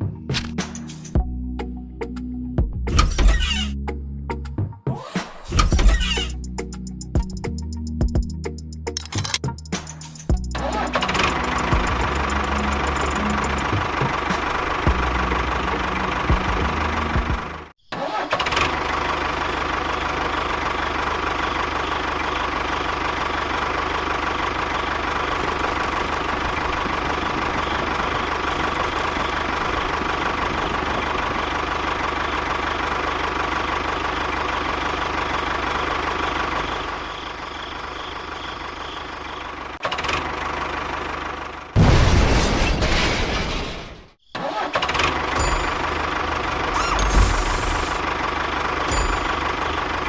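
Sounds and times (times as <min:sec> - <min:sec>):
small motor whining: 0:46.6 - 0:48.0.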